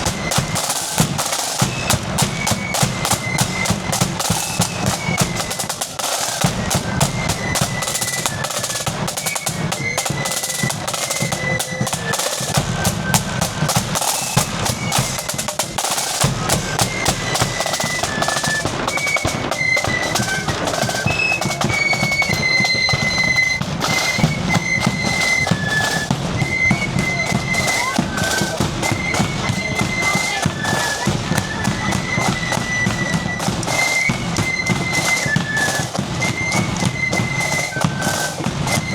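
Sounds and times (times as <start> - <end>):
high flute melody: 0.0 - 38.9
snare drum rolls: 0.0 - 38.9.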